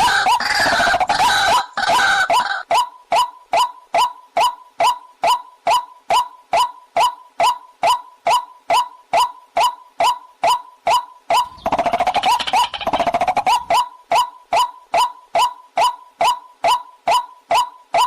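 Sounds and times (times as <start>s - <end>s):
waterhen clucking: 0.0s - 3.7s, 11.3s - 13.9s.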